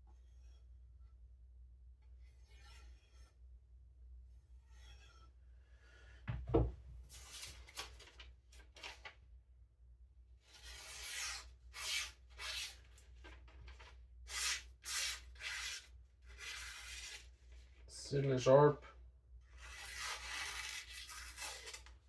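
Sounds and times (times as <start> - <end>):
knife blade scraping: 2.3 - 3.4, 4.7 - 5.3, 14.3 - 17.3
dull thump: 6.2 - 6.8.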